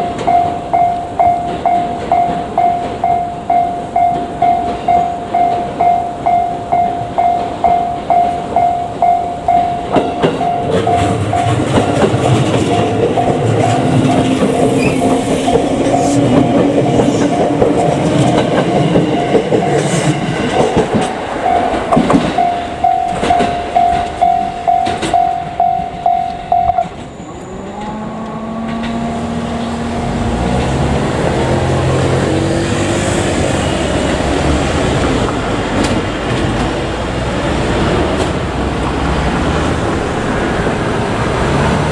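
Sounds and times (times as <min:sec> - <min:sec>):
level-crossing warning bell dinging: 0:00.0 - 0:38.5
train wheels clacking over rail joints: 0:00.0 - 0:41.9
rising engine sound: 0:10.4 - 0:41.9.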